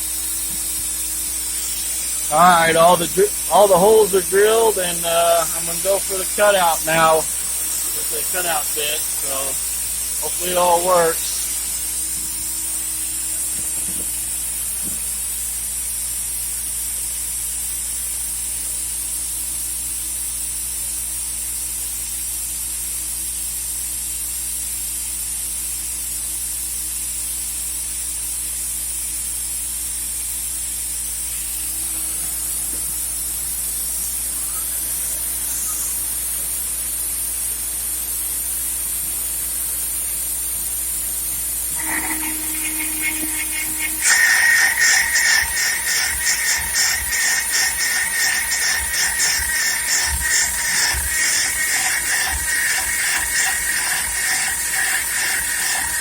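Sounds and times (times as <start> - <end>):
router spindle high-pitched hiss: 0.0 - 22.8, 28.9 - 56.0
low hum: 41.7 - 56.0.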